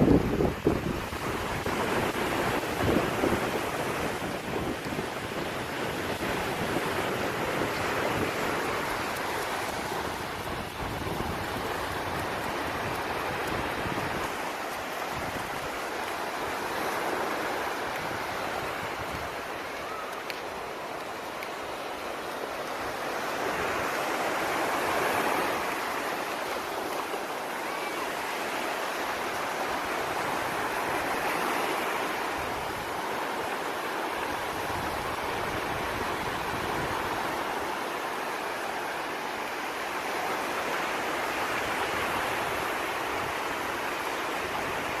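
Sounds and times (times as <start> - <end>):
surf washing onto beach: 0.0 - 45.0.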